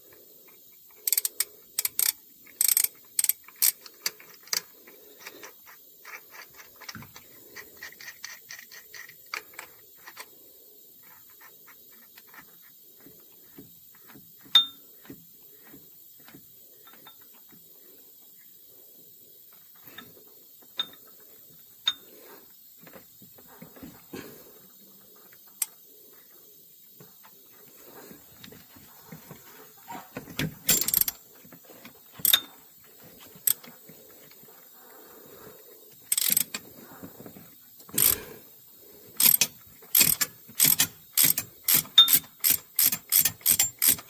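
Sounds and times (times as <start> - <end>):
ratchet clicking: 0.9 - 10.3, 30.6 - 31.2, 32.2 - 32.5, 36.1 - 36.6, 38.0 - 38.2, 39.2 - 44.0.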